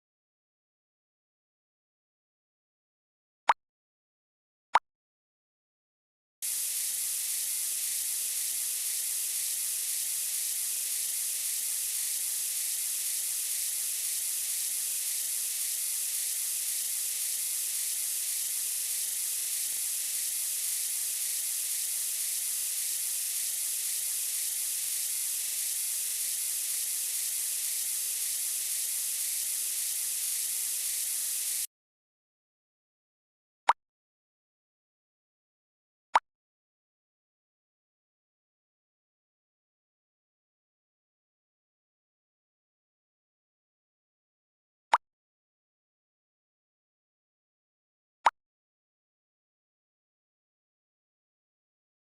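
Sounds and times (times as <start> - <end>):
steady hiss: 6.4 - 31.7.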